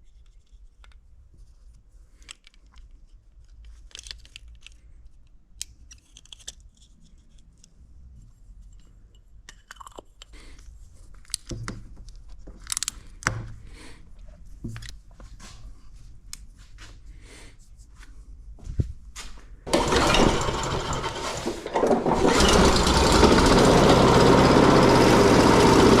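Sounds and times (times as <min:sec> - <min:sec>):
lawn mower engine running: 0:19.7 - 0:26.0.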